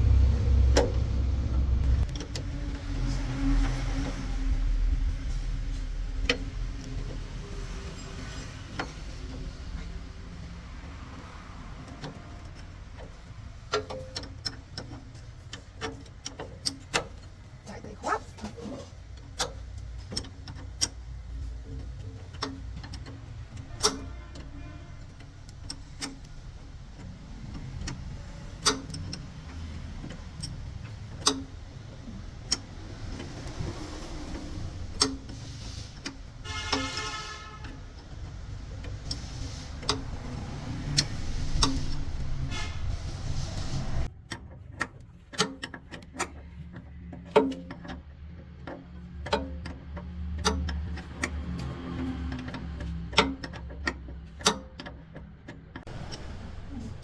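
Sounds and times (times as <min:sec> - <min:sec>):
low steady rumble: 0:00.0 - 0:13.7.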